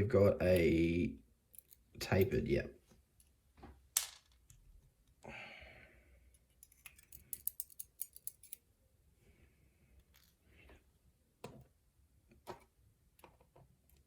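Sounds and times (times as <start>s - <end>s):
metallic clicks of lock pins: 6.4s - 8.6s.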